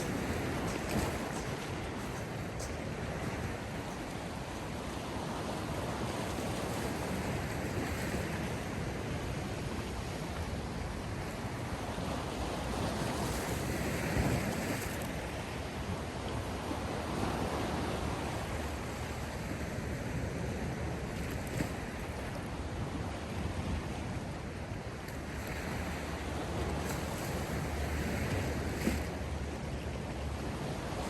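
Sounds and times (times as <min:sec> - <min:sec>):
sea waves washing: 0:00.0 - 0:15.8.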